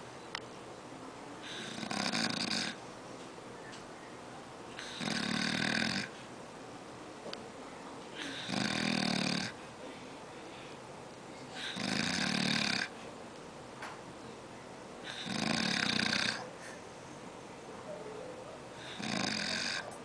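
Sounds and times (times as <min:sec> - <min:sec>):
man snoring: 0:01.5 - 0:02.8, 0:04.8 - 0:06.1, 0:08.2 - 0:09.6, 0:11.6 - 0:12.9, 0:15.1 - 0:16.4, 0:18.8 - 0:19.9.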